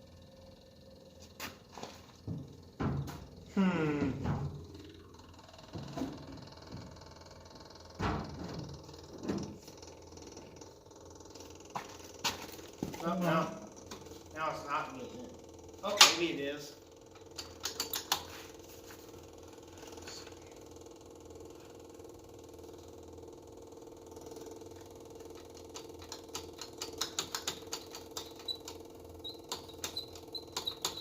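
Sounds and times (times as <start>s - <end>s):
steady low hum: 0.0s - 30.4s
electric fuel pump ticking: 4.1s - 18.4s, 19.1s - 31.0s.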